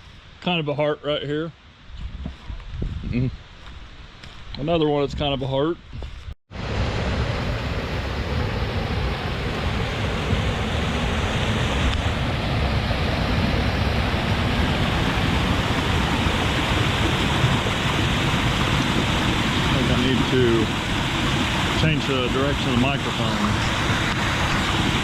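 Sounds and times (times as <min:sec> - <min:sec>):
rush of flowing water: 0:06.5 - 0:25.0.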